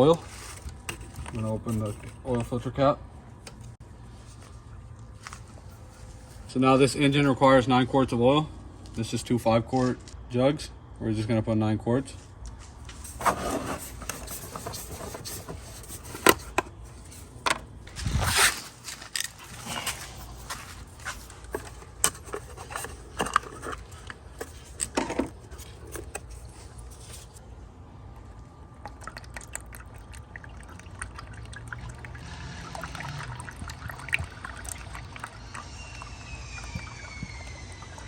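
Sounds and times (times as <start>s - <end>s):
oil pouring through funnel: 28.2s - 38.0s.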